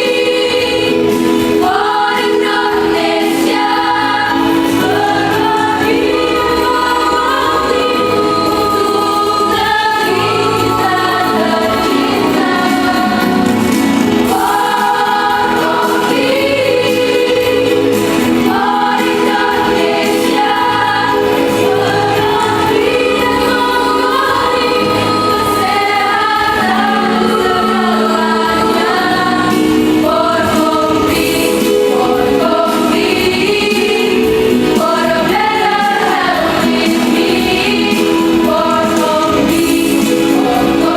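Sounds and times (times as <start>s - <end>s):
choir singing in harmony: 0.0s - 40.9s.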